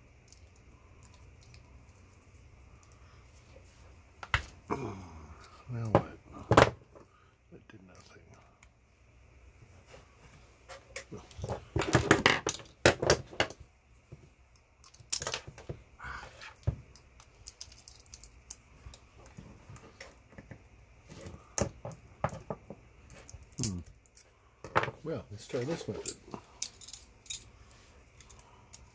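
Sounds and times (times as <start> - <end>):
metal parts clinking and knocking: 14.8 - 15.7, 17.4 - 18.6, 25.7 - 27.5.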